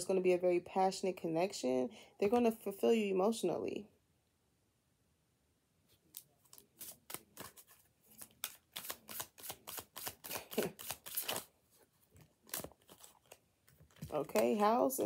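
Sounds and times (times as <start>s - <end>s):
cards being shuffled: 5.9s - 15.0s.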